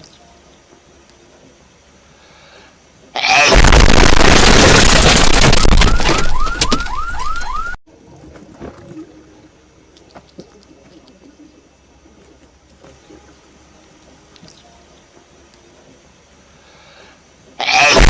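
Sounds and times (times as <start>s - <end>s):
faint background noise: 0.0s - 4.8s, 5.6s - 18.0s
loud distorted sound effect blast: 3.2s - 6.8s, 17.8s - 18.0s.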